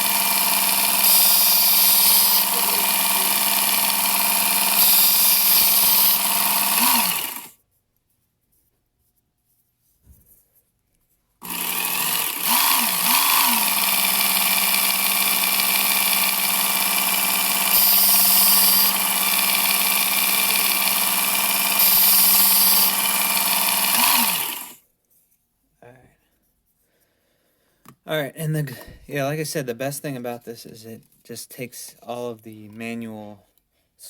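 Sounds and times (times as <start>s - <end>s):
belt grinder motor humming: 0.0s - 7.5s, 11.4s - 24.8s
knife grinding on abrasive belt: 0.0s - 7.6s, 11.4s - 24.8s.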